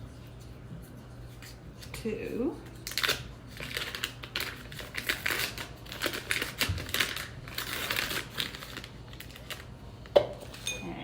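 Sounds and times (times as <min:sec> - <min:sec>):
paper wrappers crinkling: 0:02.6 - 0:10.7.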